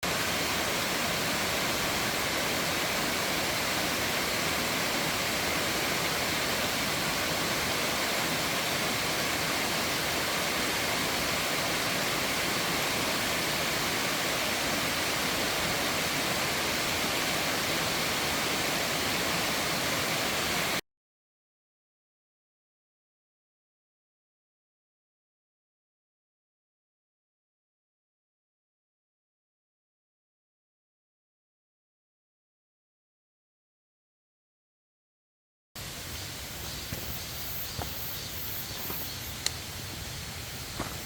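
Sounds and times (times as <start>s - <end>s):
stream rushing over rocks: 0.0s - 20.8s, 35.8s - 41.0s.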